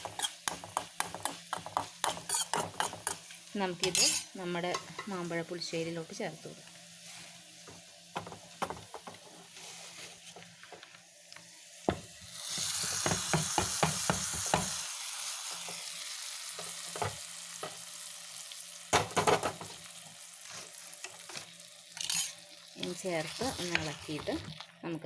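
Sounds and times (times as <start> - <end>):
spoon scraping a pot: 0.0 - 3.2, 3.8 - 5.1, 22.0 - 22.4
hot oil sizzling: 0.0 - 25.0.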